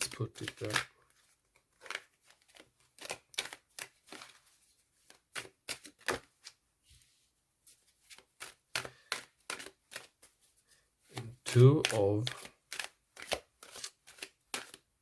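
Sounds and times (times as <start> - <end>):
cards snapping and tapping on table: 1.8 - 4.3, 5.1 - 6.6, 8.1 - 10.2, 11.2 - 14.9.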